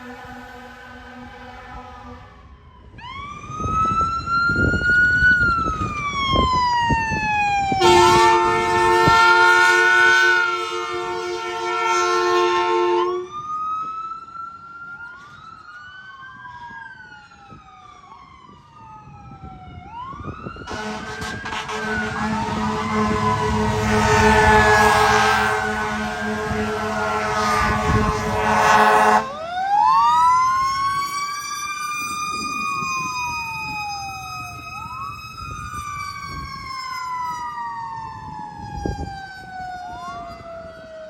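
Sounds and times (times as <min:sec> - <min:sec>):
air horn blasts: 0:00.0 - 0:02.5, 0:07.8 - 0:13.3, 0:20.7 - 0:29.4
emergency siren wailing: 0:00.0 - 0:41.0.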